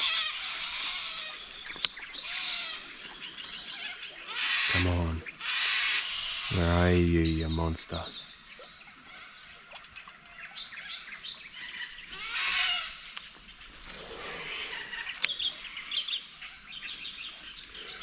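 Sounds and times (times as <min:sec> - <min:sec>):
small birds chirping: 0:00.0 - 0:18.0
sharp clicks: 0:14.9 - 0:15.4.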